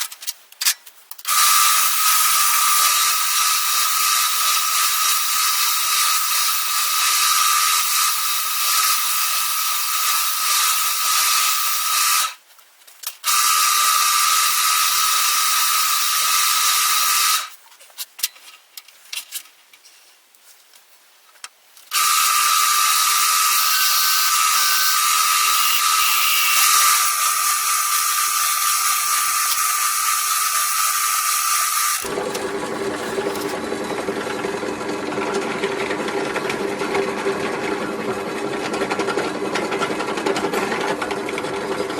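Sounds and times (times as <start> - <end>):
electric power tool whining: 21.9 - 37.0.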